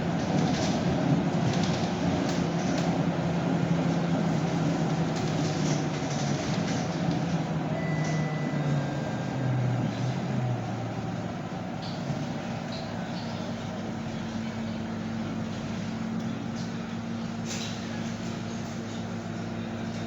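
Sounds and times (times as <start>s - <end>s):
bus diesel engine running: 0.0s - 20.0s.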